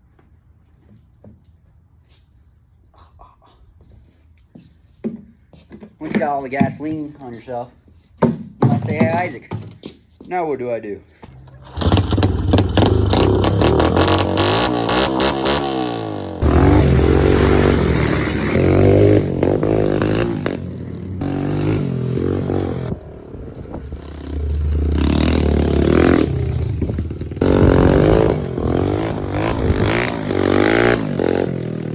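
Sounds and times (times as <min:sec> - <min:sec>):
engine revving: 0:11.5 - 0:31.9
clatter: 0:11.6 - 0:15.7.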